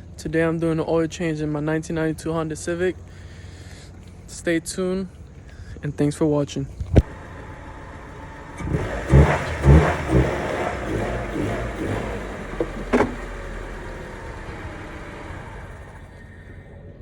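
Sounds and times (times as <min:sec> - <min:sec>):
car engine revving: 0:07.0 - 0:16.9.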